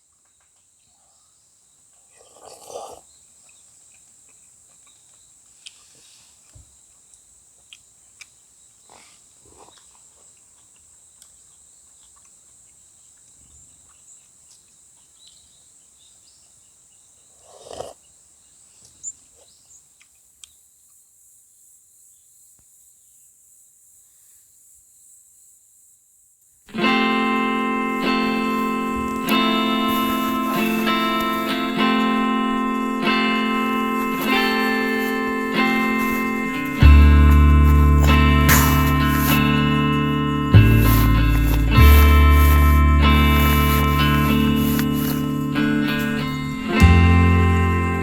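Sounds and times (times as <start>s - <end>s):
rustle: 1.9s - 48.0s
crickets chirping: 24.9s - 48.0s
strummed guitar music: 26.7s - 48.0s.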